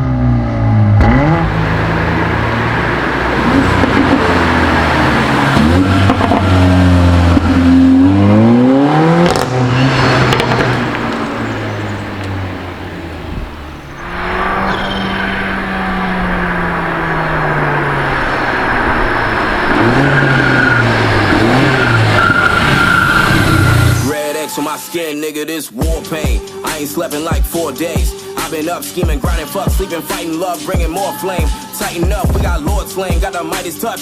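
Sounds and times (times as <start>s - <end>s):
car engine accelerating hard: 0.0s - 24.2s.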